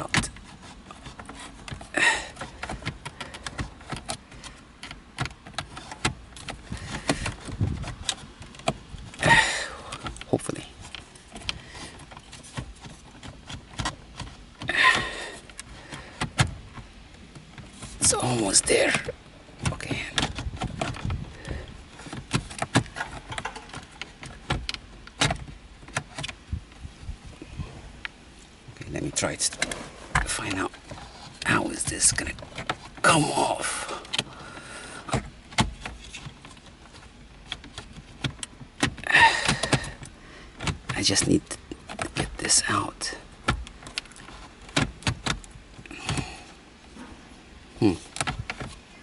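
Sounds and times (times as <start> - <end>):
plastic clicks and rattles: 9.9 - 26.4.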